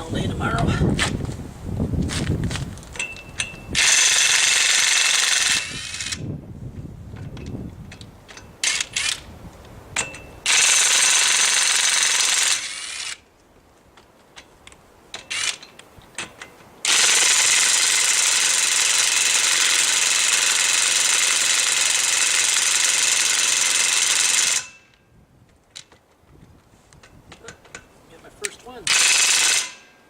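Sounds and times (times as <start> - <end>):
impact wrench hammering: 28.9 - 29.9.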